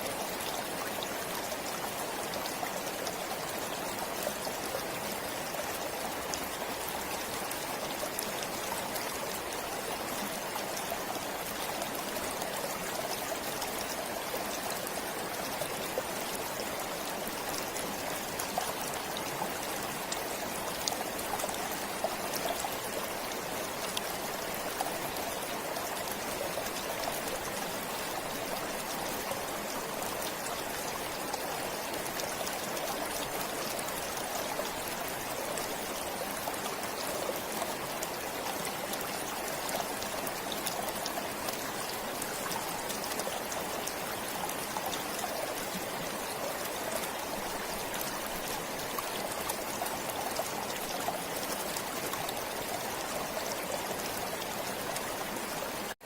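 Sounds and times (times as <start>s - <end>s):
stream water rushing and splashing: 0.0s - 56.0s.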